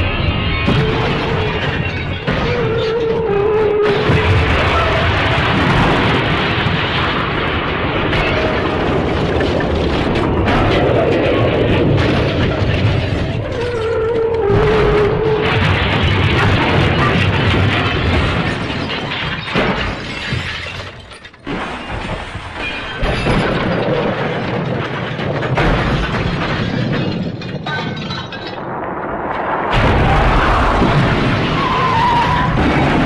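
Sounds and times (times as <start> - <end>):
cartoon crashing and breaking: 0.0 - 33.0.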